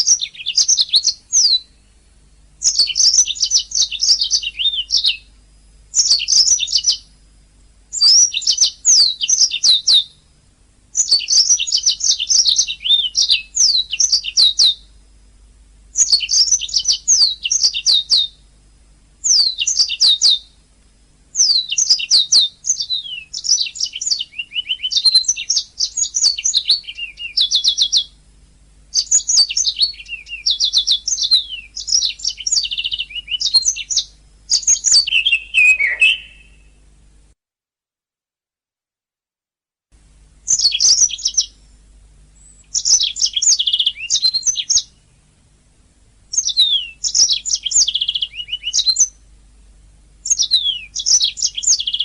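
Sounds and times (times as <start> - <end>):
canary singing: 0.0 - 2.0, 2.6 - 7.2, 7.9 - 10.2, 10.9 - 14.9, 15.9 - 18.4, 19.2 - 20.6, 21.3 - 28.2, 28.9 - 36.8, 40.5 - 41.7, 42.4 - 45.2, 46.3 - 49.2, 50.2 - 52.0.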